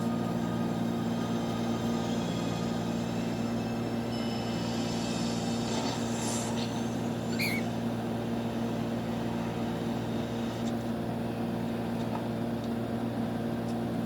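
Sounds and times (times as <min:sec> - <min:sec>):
low mechanical hum: 0:00.0 - 0:14.0
cockatiel chirp: 0:07.3 - 0:07.7.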